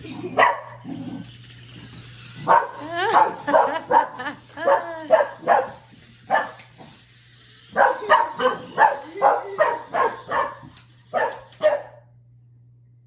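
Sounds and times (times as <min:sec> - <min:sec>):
dog barking: 0:00.4 - 0:00.8, 0:02.4 - 0:06.7, 0:07.7 - 0:12.0.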